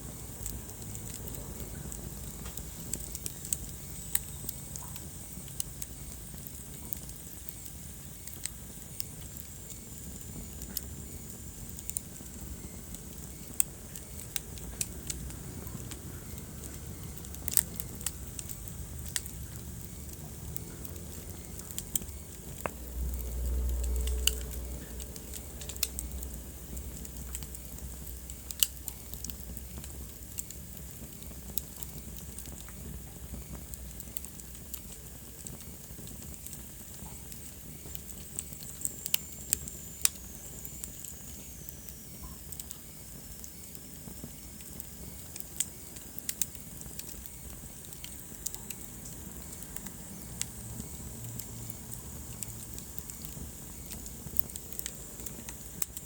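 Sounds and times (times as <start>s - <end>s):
low fire rumble: 0.0s - 56.0s
wood fire crackling and popping: 0.0s - 56.0s.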